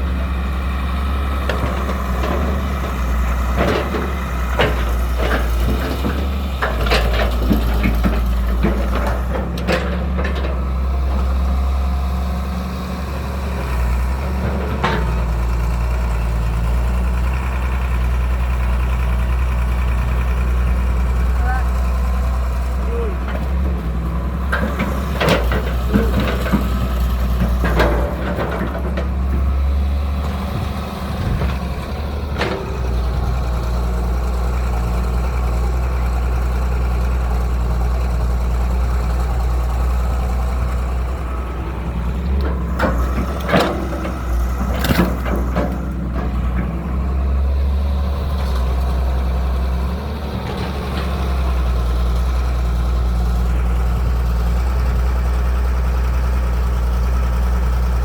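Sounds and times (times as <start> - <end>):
excavator diesel engine running: 0.0 - 58.0
metal clanks and scrapes: 3.6 - 10.7, 14.2 - 15.4, 23.2 - 29.5, 31.2 - 33.3, 42.1 - 49.5.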